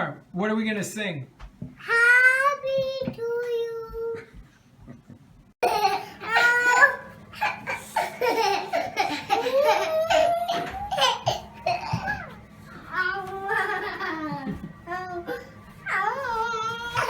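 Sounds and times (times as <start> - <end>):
child laughing: 5.6 - 12.3, 13.0 - 15.5.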